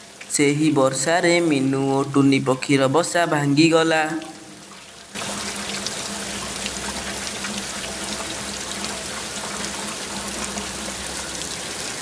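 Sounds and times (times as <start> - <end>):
heavy rain: 0.0 - 12.0.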